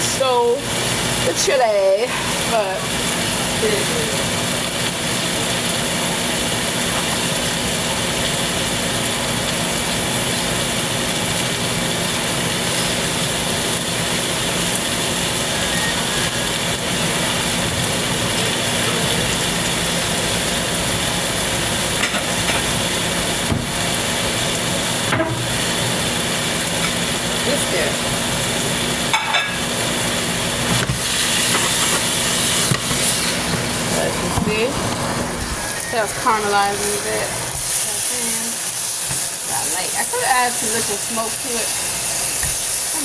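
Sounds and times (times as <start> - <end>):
chicken sizzling in oil: 0.0 - 43.0.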